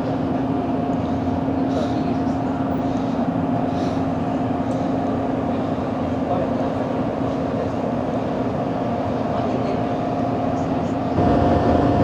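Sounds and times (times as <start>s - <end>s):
ship machinery hum: 0.0s - 12.0s.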